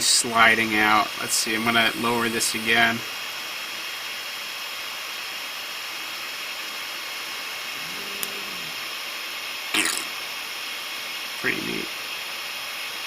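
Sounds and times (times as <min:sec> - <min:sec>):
printer fan hiss: 0:00.0 - 0:09.6
stepper motor hum: 0:00.6 - 0:03.1, 0:07.4 - 0:09.0.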